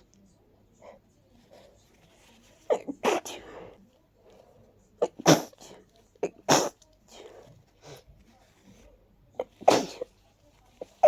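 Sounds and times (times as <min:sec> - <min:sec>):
person sneezing: 0:02.7 - 0:03.6, 0:05.0 - 0:06.8, 0:09.4 - 0:10.1
sniffly breaths: 0:03.2 - 0:04.8, 0:07.1 - 0:08.3.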